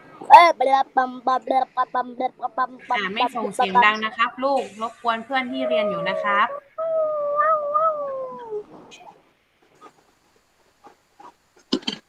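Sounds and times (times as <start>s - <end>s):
wavering howl-like voice: 0.0s - 4.3s, 5.1s - 9.1s.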